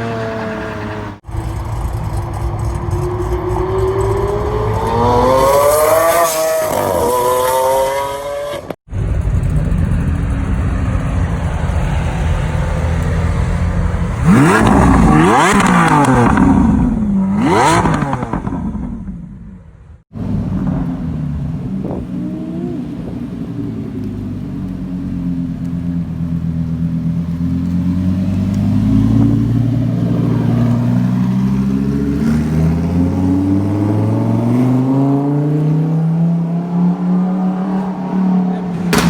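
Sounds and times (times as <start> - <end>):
car engine running at low revs: 8.9 - 34.5.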